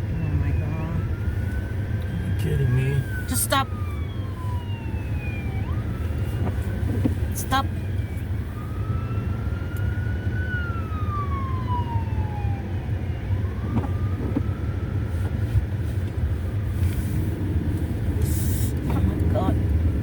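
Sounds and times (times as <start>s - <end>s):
emergency siren wailing: 0.0s - 20.0s
steady low rumble: 11.0s - 20.0s.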